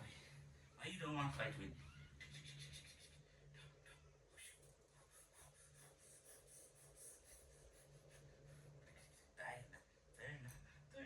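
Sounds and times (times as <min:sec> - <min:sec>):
low steady hum: 0:00.0 - 0:11.0
faint scratching and rustling: 0:01.0 - 0:03.7.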